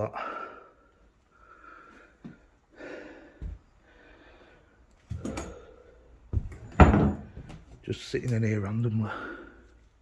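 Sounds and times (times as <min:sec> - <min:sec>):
man breathing and sniffing: 0:00.0 - 0:06.3
knocks and thumps from handling: 0:06.3 - 0:07.7.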